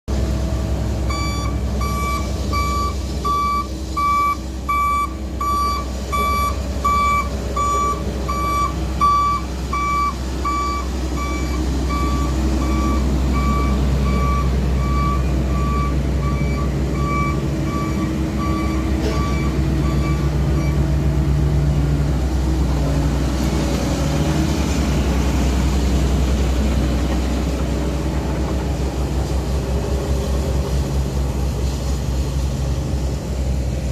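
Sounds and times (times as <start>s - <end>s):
vehicle engine running: 0.1s - 33.9s
reversing alarm beeping: 1.1s - 20.8s.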